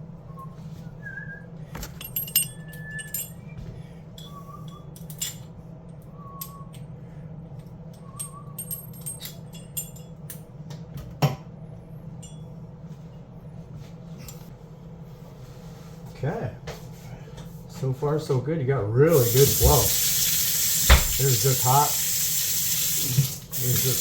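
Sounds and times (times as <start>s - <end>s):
metallic clinks of tools: 1.9s - 3.4s, 8.2s - 10.4s.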